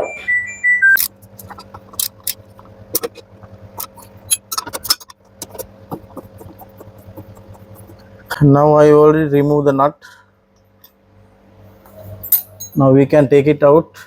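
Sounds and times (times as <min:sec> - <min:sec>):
short electronic tones: 0:00.0 - 0:01.0
steady electrical hum: 0:00.0 - 0:14.0.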